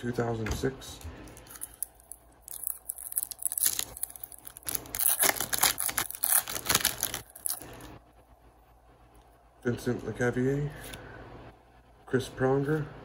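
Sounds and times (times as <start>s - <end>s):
foil wrapper tearing and crinkling: 1.4s - 7.8s.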